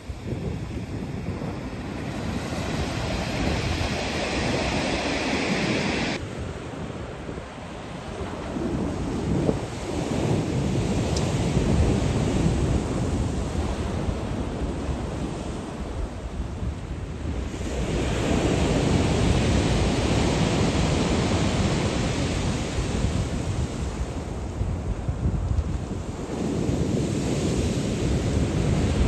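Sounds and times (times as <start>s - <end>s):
ocean waves breaking: 0.0s - 16.0s.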